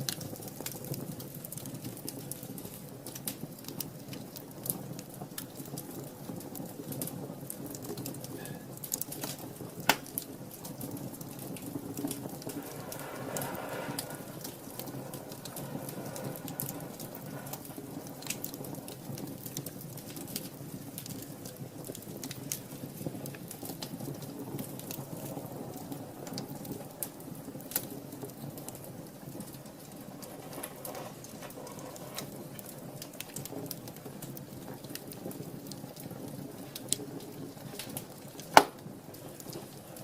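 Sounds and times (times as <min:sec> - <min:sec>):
wood fire crackling: 0:00.0 - 0:40.0
loud pop from fire: 0:08.0 - 0:21.2, 0:37.8 - 0:39.2.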